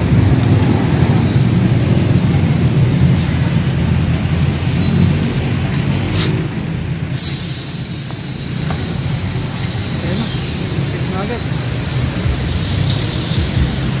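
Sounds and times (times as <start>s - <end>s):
air compressor drone: 0.0s - 14.0s
air hissing: 0.6s - 14.0s.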